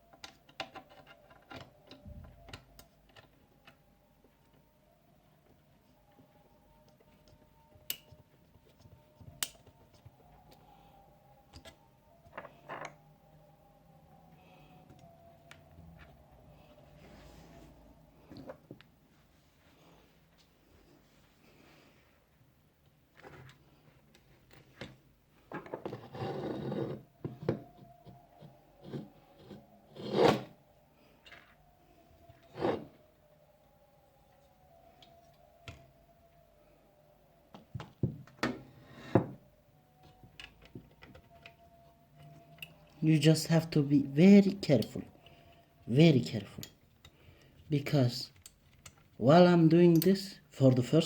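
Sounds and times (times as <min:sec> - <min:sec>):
tool scraping: 0:25.8 - 0:27.0, 0:28.8 - 0:30.5, 0:32.4 - 0:33.0.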